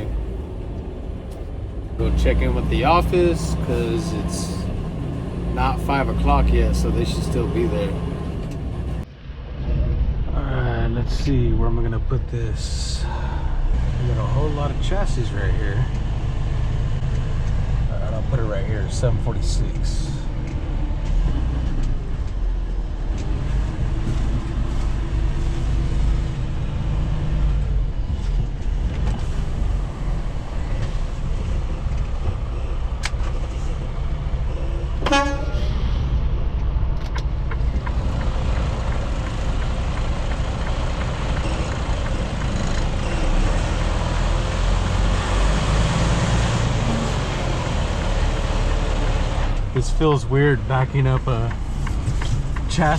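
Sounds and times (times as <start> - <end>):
truck diesel engine running: 0.0 - 9.0, 13.1 - 52.9
short horn-like sound: 35.0 - 35.8.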